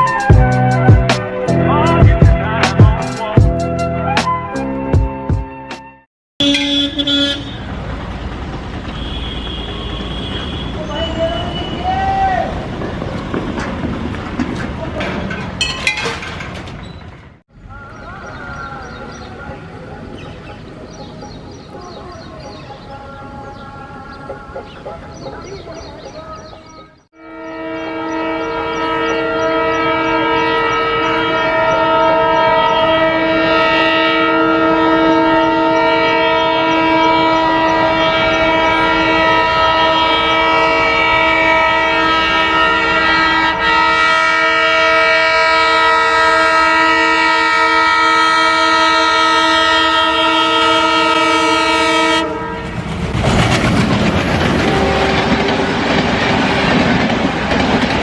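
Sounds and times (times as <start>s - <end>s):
locomotive horn blast: 6.4s - 7.8s, 8.8s - 12.6s, 27.1s - 53.0s, 54.5s - 57.0s
train wheels clattering on rails: 12.5s - 17.4s, 52.6s - 58.0s.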